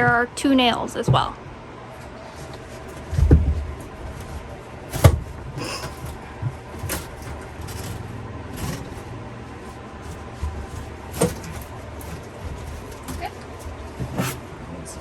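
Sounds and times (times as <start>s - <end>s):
wooden cabinet knocks and bangs: 2.8s - 14.6s.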